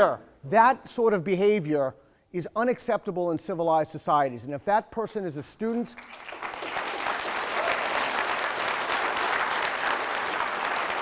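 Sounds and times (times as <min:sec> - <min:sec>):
audience applauding: 0:06.0 - 0:11.0.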